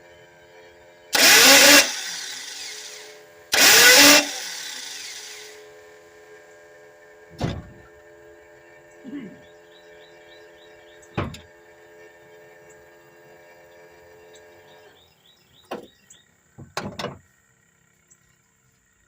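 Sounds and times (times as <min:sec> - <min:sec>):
car starter motor cranking: 0:01.1 - 0:05.6
short thump: 0:07.4 - 0:07.9, 0:11.1 - 0:11.5.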